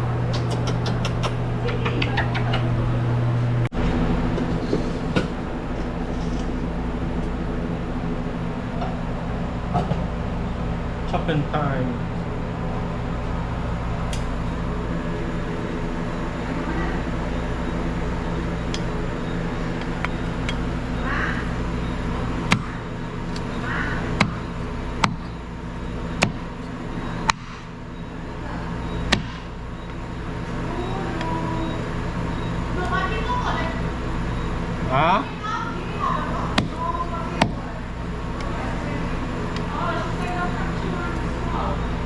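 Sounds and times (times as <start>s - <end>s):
steady low hum: 0.0s - 42.0s
knife chopping on a board: 29.1s - 29.5s.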